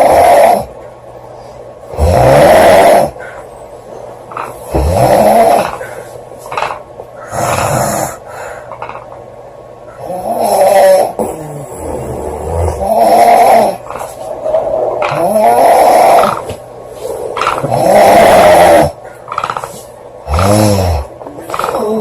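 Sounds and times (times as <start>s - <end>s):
girl snoring loudly: 0.0s - 0.7s, 1.9s - 3.2s, 4.7s - 5.8s, 7.3s - 8.2s, 10.0s - 13.8s, 15.0s - 16.5s, 17.5s - 19.0s, 20.2s - 22.0s
quiet breathing: 1.2s - 2.0s, 7.2s - 9.0s.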